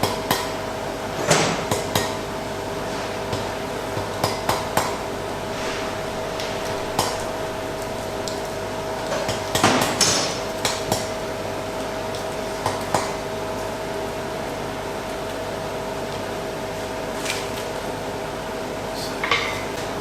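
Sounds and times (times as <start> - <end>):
hammer striking hot iron: 4.2 - 8.6
steady hum: 4.8 - 9.3.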